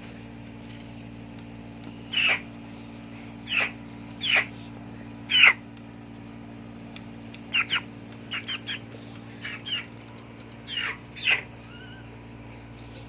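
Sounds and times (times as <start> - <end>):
chicken squawking: 2.1 - 2.5, 3.4 - 4.6, 5.3 - 5.6, 7.5 - 10.0, 10.6 - 12.1.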